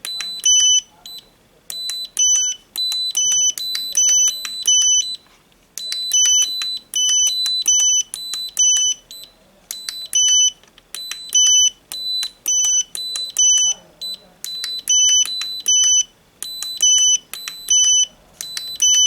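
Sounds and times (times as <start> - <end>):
two-pitch electronic alarm beeps: 5.8 - 19.0.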